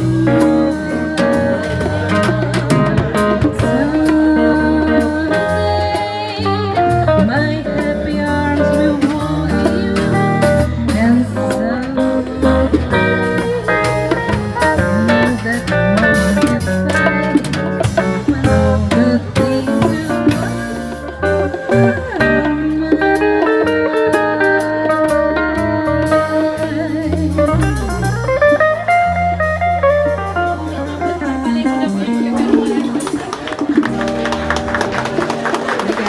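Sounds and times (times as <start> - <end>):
blues band playing: 0.0 - 36.0
guitar lines with bends: 0.0 - 36.0.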